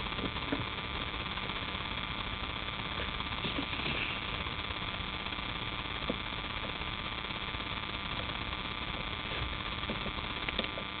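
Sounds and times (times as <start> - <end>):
turbo whine: 0.0 - 11.0.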